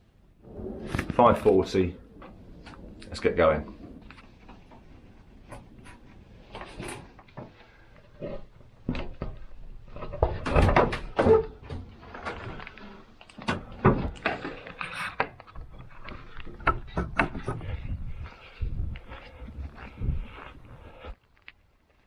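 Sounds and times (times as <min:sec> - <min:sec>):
footsteps walking: 0:17.6 - 0:22.0.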